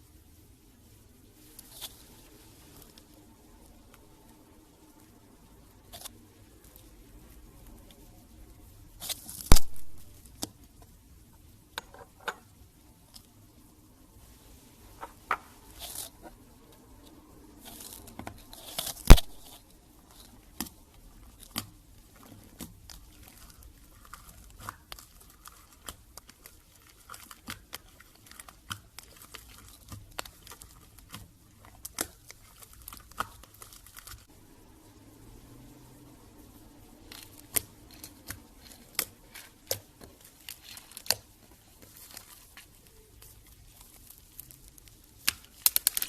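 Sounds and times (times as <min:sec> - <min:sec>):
slime crackling and popping: 0:09.0 - 0:10.6, 0:17.5 - 0:34.3, 0:37.0 - 0:46.0.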